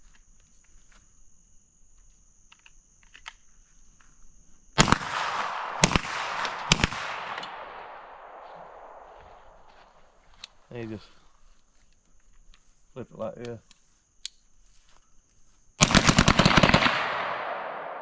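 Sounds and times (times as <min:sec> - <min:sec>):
gunshots with long echo: 0:04.8 - 0:09.7, 0:15.8 - 0:18.0.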